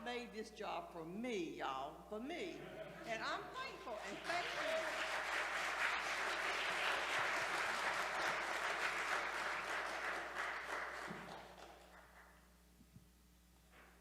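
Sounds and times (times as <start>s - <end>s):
congregation applauding: 3.6s - 12.4s.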